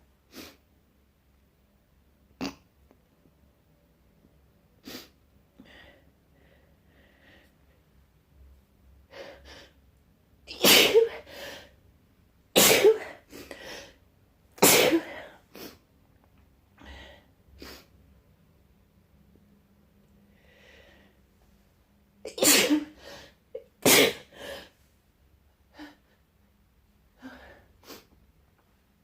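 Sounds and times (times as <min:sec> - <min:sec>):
person sneezing: 0:10.5 - 0:11.4, 0:12.6 - 0:13.5, 0:14.6 - 0:15.8, 0:22.3 - 0:24.7.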